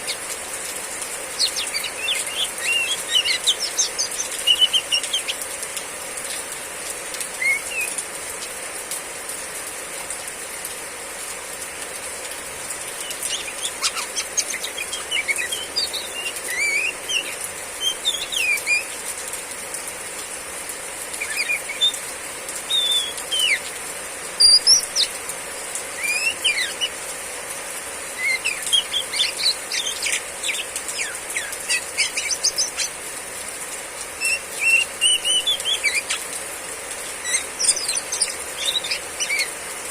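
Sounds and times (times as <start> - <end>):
heavy rain hissing: 0.0 - 39.9
bird chirping and whistling: 1.4 - 5.4, 7.4 - 7.9, 13.0 - 19.0, 21.2 - 22.0, 22.7 - 23.7, 24.4 - 25.1, 26.0 - 27.0, 28.2 - 33.0, 34.2 - 36.2, 37.2 - 39.6.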